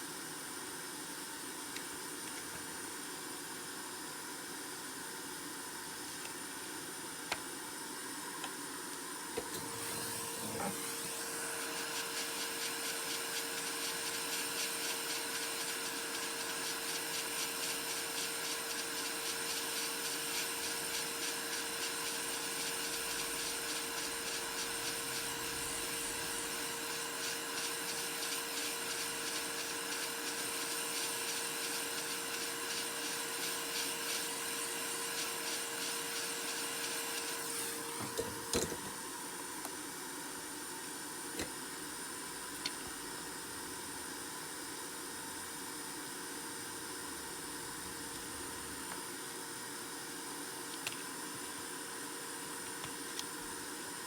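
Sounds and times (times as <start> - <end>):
electric blower humming: 9.3 - 40.1.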